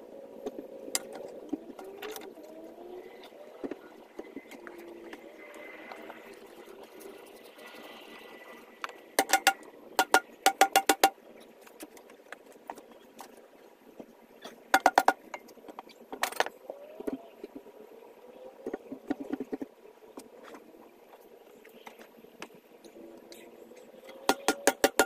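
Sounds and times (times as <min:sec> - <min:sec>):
metal striking metal: 0:09.2 - 0:11.1.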